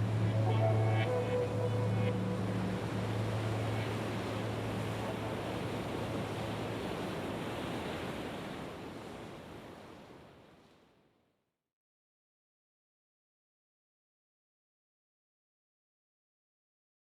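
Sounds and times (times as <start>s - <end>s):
low hum: 0.0s - 6.5s.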